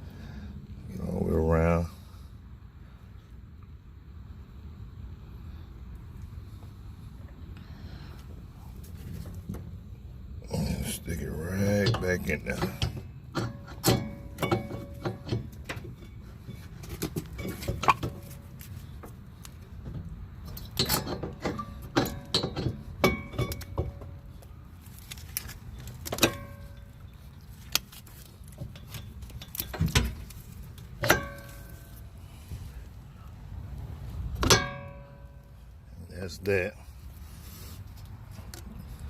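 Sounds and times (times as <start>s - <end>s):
metal tools clinking and knocking: 11.7s - 18.5s, 20.5s - 24.2s, 25.2s - 32.1s.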